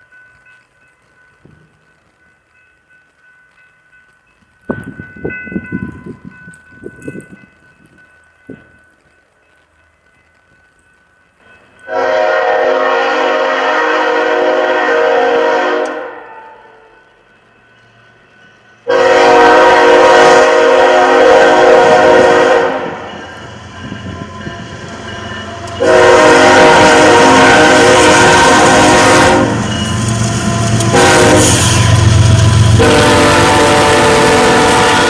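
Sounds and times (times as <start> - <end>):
passing train rumble: 0.0 - 35.0
train horn blasts: 11.9 - 16.9, 18.8 - 23.2, 25.4 - 35.0.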